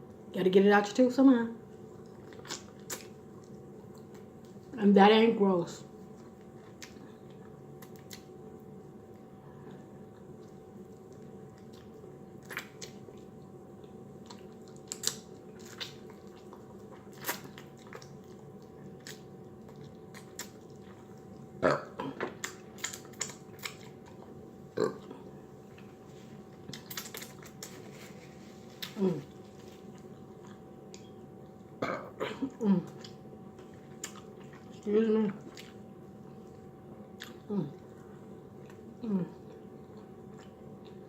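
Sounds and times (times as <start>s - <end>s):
faint steady hum: 0.0s - 41.0s
wet chewing clicks and smacks: 2.0s - 4.6s, 6.2s - 8.4s, 10.1s - 21.5s, 22.3s - 24.3s, 26.6s - 27.8s, 32.9s - 35.9s, 39.5s - 41.0s.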